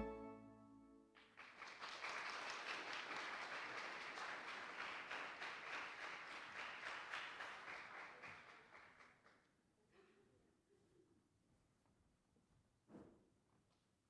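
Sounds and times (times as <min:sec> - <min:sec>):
congregation applauding: 0:01.2 - 0:09.2.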